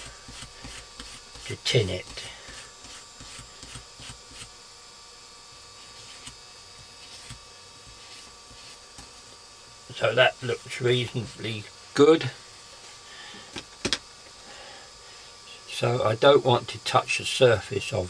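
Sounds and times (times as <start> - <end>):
steady low hiss: 0.0 - 2.9, 5.8 - 18.0
wire brush scrubbing circuit board: 0.0 - 4.6, 5.7 - 12.2.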